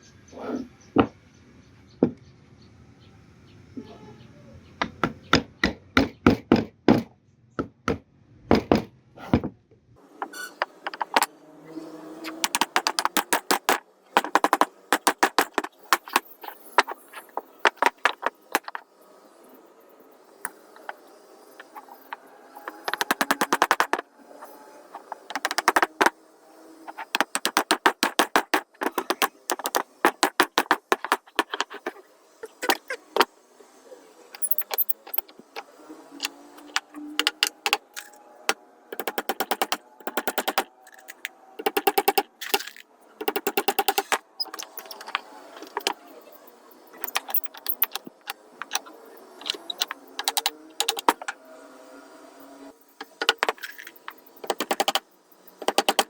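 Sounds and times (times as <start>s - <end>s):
sharp mechanical tool clicks: 12.2s - 16.9s, 22.7s - 24.0s, 39.0s - 45.9s, 54.4s - 55.0s.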